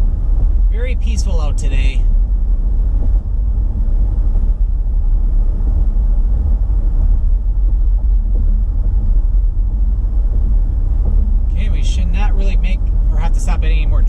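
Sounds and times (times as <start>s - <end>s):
car driving on highway: 0.0s - 14.0s.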